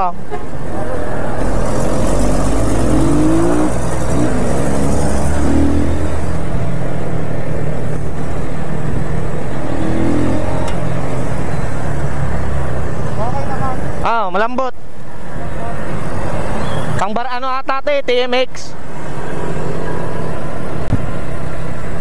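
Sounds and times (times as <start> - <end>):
motorcycle engine running: 1.4 - 6.8.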